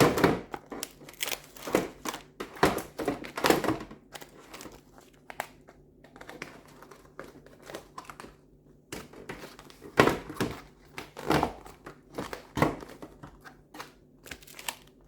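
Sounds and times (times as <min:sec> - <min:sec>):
plastic packets crinkling: 0:00.6 - 0:08.3, 0:13.8 - 0:15.0.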